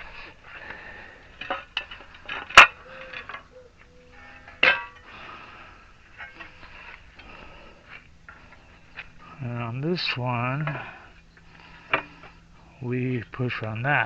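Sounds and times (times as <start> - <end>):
metal tools clinking: 4.3 - 5.1
sharp ringing metal clanks: 4.3 - 5.1.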